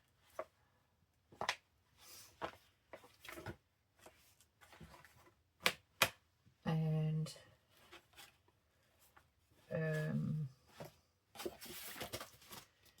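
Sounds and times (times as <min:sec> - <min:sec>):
paper rustling: 0:11.4 - 0:13.0.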